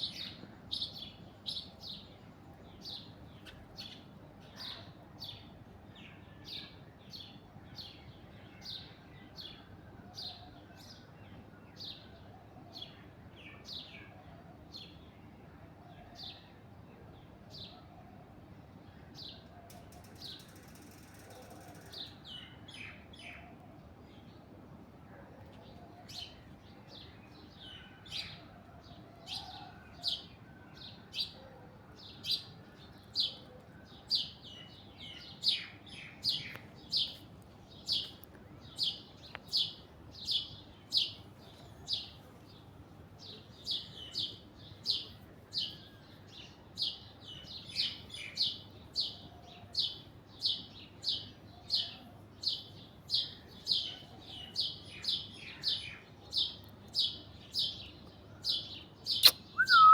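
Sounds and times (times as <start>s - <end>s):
parakeet chirping: 59.2s - 59.9s.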